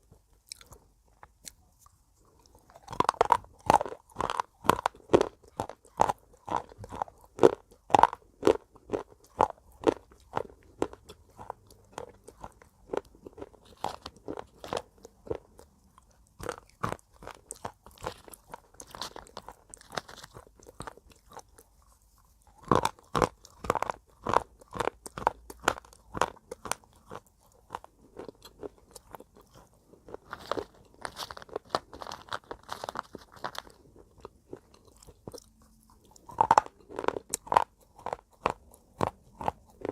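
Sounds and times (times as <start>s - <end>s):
chewing crunches: 0.0s - 39.9s.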